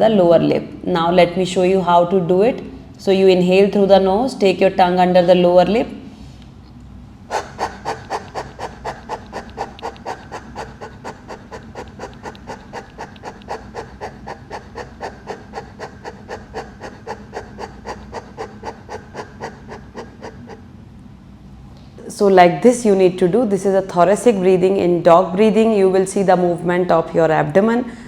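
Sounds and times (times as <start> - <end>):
woman breathing rapidly: 7.3 - 20.7.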